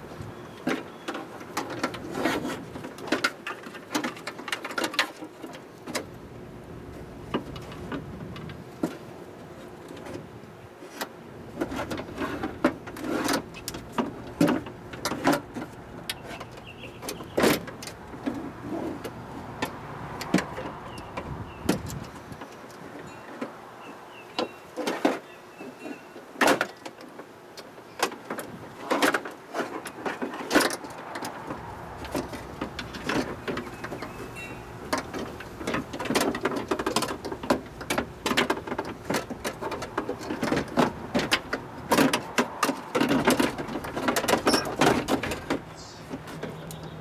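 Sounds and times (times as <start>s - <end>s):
metal clicks and rattles: 28.0s - 46.9s.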